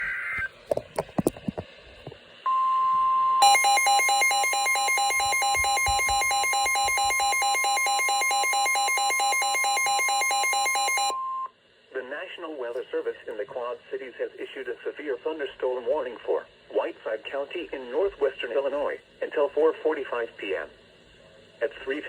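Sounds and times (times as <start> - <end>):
pulsing two-pitch alarm: 2.5 - 11.5.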